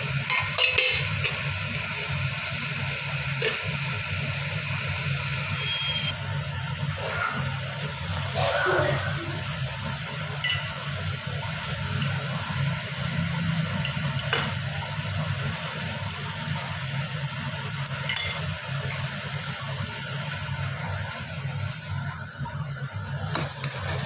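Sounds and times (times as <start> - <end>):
kitchen utensils clinking: 0.2 - 2.2, 10.4 - 10.8, 18.0 - 18.5.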